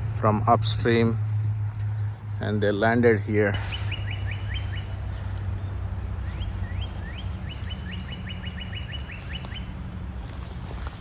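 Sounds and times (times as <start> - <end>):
low background rumble: 0.0 - 11.0
songbird singing: 3.5 - 11.0.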